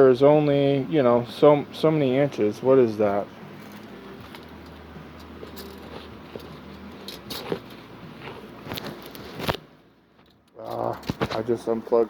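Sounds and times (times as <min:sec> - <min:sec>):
low electrical hum: 0:00.0 - 0:12.0
clicks and knocks of handling: 0:10.2 - 0:11.5.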